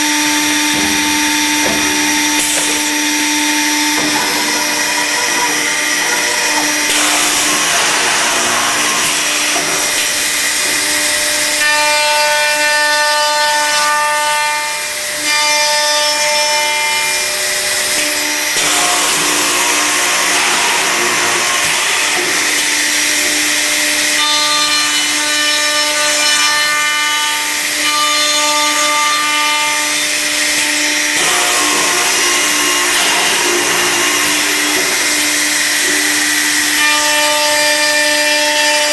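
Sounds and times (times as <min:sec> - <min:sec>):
steady machine hum: 0:00.0 - 0:11.6
machine whine: 0:00.0 - 0:15.3
machine cutting into wood: 0:00.0 - 0:38.9.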